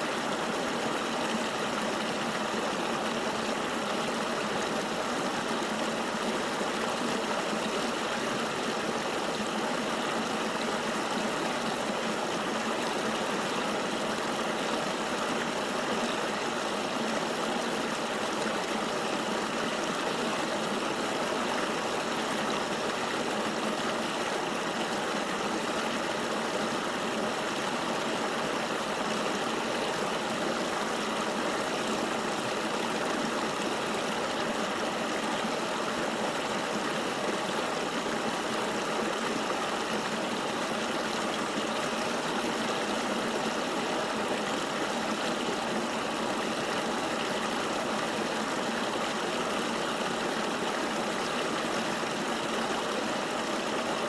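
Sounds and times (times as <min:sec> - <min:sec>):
river water rushing: 0:00.0 - 0:54.0.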